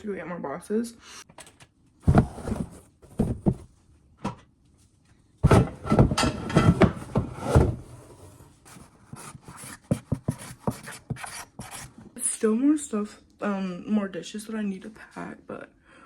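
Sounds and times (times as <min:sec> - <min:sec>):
clattering and rustling: 0:02.0 - 0:03.8, 0:05.4 - 0:08.5
knocks of kitchen items: 0:05.4 - 0:07.8.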